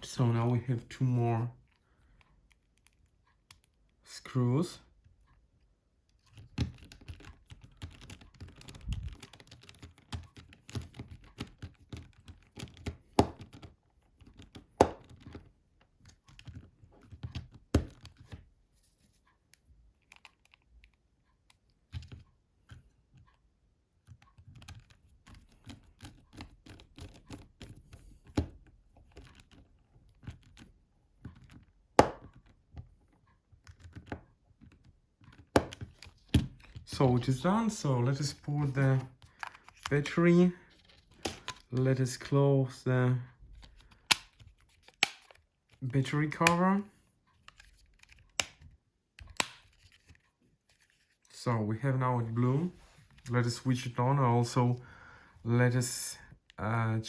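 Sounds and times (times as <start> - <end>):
plastic phone housing clicks and taps: 46.4 - 46.6, 47.4 - 50.2.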